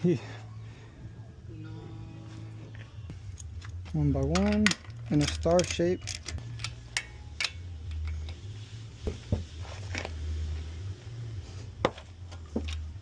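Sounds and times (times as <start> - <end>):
steady low rumble: 0.0 - 13.0
metallic clicks and knocks: 3.3 - 8.4.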